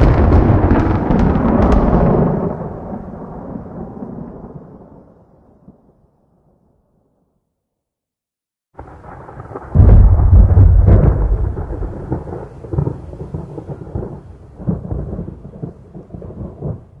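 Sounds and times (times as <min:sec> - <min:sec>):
thunder rumble and clap: 0:00.0 - 0:05.2, 0:08.8 - 0:17.0.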